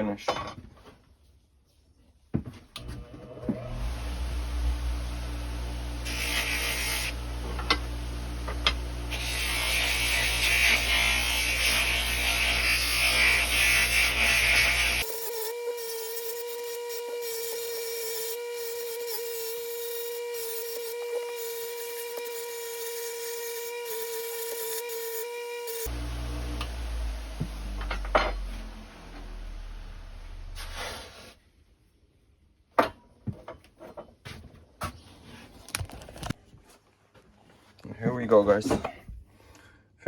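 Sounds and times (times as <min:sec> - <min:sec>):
motor humming: 0:02.9 - 0:12.4, 0:23.8 - 0:30.6.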